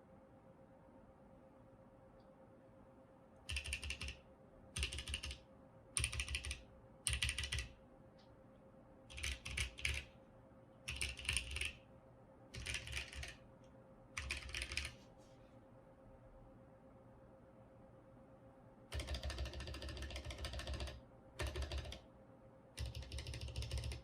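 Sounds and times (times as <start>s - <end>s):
mechanical keyboard keystrokes: 3.5s - 4.2s, 4.8s - 5.4s, 6.0s - 7.7s, 9.1s - 10.1s, 10.9s - 11.8s, 12.6s - 13.4s, 14.2s - 15.0s, 18.9s - 22.0s, 22.8s - 24.0s.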